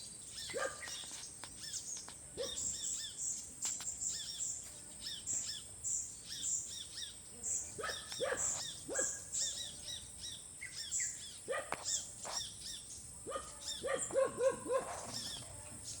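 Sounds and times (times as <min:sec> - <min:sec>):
birds chirping: 0:00.0 - 0:16.0
lower-pitched bird calls: 0:04.1 - 0:16.0.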